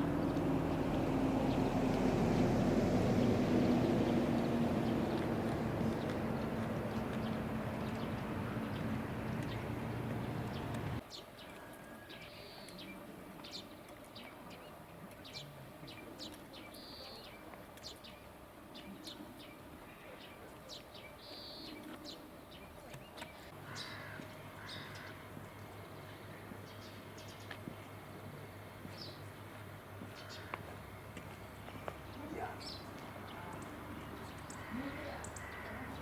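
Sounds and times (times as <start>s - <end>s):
low steady hum: 0.0s - 11.0s
small birds chirping: 0.0s - 11.2s, 25.9s - 36.0s.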